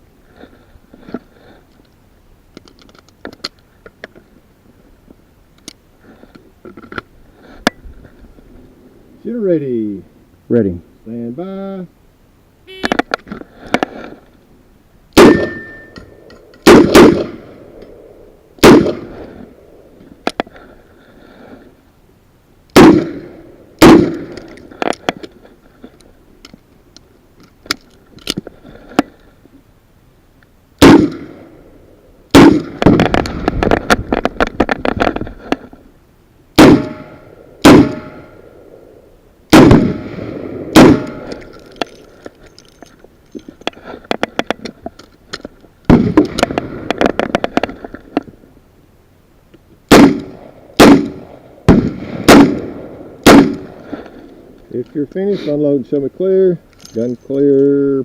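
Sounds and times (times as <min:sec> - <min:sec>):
metallic clicks and clatter: 0:41.3 - 0:45.7.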